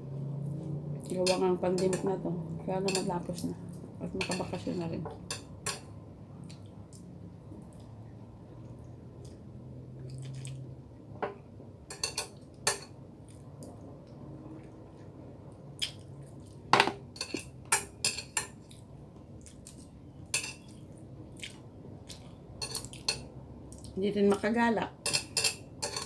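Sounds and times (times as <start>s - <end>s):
cutlery clinking against a plate: 2.9s - 3.1s, 4.2s - 6.0s, 11.9s - 13.0s, 16.8s - 18.6s, 20.3s - 20.8s, 22.6s - 23.3s, 25.0s - 26.0s.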